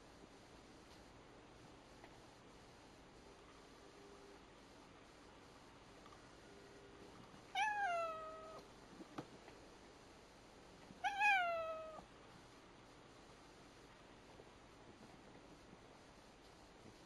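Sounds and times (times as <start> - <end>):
cat meowing: 7.5 - 8.6, 11.0 - 12.0.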